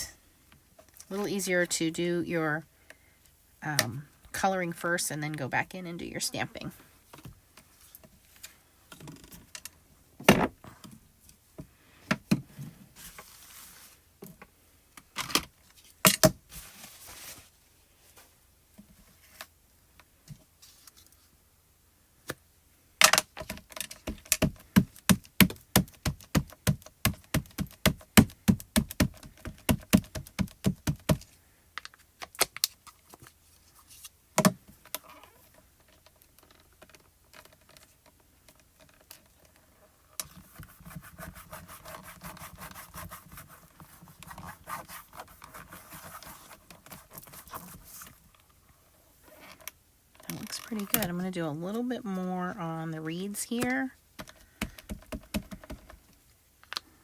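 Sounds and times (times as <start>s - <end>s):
rubber stamp tapping ink pad: 23.4s - 31.3s, 54.6s - 55.8s.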